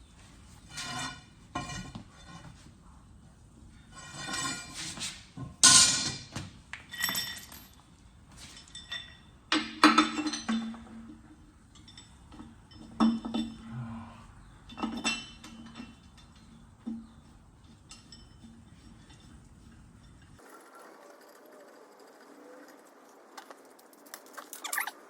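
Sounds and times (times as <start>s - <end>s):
metal tools clanking: 3.9s - 4.9s, 5.6s - 13.7s, 14.4s - 20.5s.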